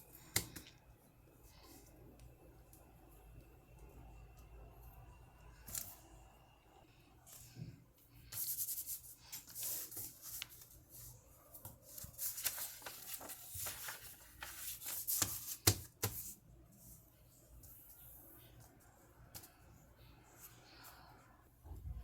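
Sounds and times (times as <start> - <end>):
paper rustling and creasing: 8.4 - 16.4.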